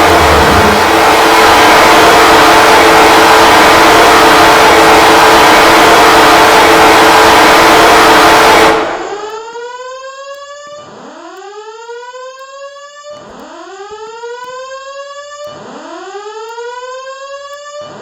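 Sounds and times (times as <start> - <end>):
rising whoop evacuation tone: 0.0 - 7.3
loud even noise: 0.0 - 9.3.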